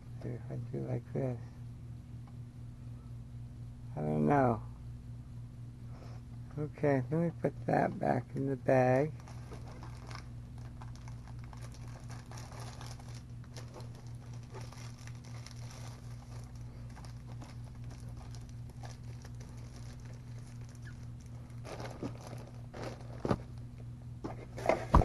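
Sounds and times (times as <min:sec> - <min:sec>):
steady low hum: 0:00.0 - 0:25.0
plastic bag crinkling: 0:09.1 - 0:23.6.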